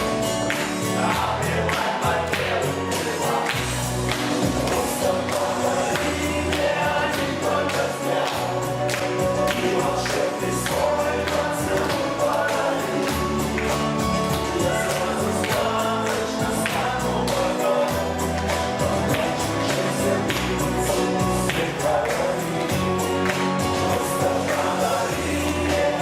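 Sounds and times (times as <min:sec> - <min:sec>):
song with singing voices: 0:00.0 - 0:26.0.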